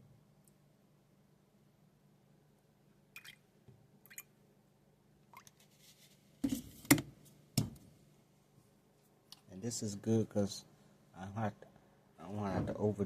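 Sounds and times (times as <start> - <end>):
liquid pouring and handling: 5.3 - 6.2.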